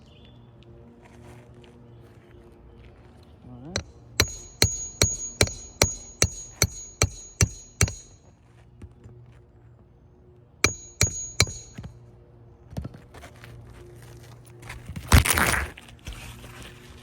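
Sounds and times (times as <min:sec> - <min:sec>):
hammer blows on roofing nails: 0:03.8 - 0:08.2, 0:10.6 - 0:11.9.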